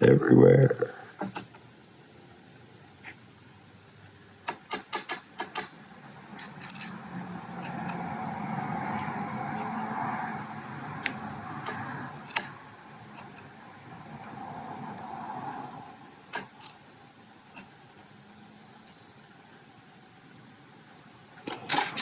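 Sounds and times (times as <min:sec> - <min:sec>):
metal lock parts clicking: 0:04.5 - 0:07.0, 0:11.6 - 0:12.6, 0:16.3 - 0:16.8, 0:21.4 - 0:22.0.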